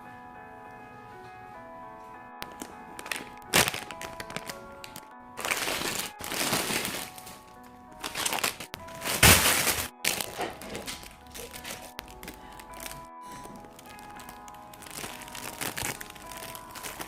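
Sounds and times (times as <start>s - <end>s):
background music: 0.0s - 17.0s
plastic packaging crinkling: 2.4s - 17.0s.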